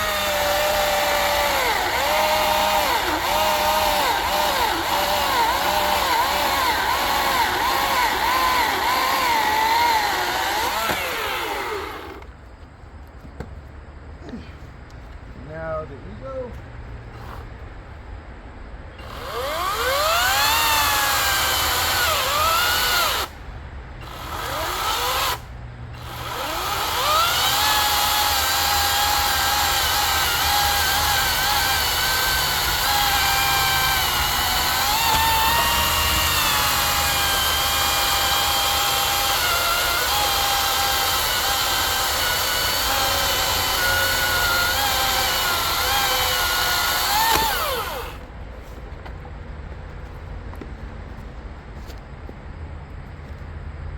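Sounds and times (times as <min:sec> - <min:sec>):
chainsaw cutting wood: 0:00.0 - 0:12.3, 0:19.0 - 0:23.3, 0:24.0 - 0:48.2.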